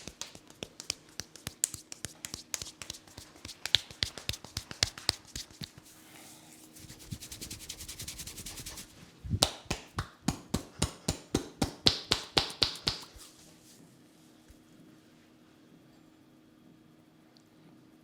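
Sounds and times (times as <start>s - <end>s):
hands slapping a head: 0.0s - 5.9s, 6.9s - 13.3s.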